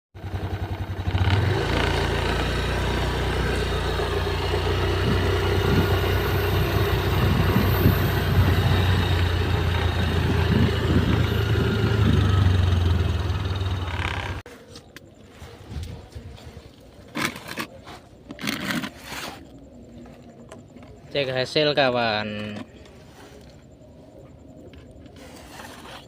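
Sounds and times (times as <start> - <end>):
engine running: 0.2 - 14.5.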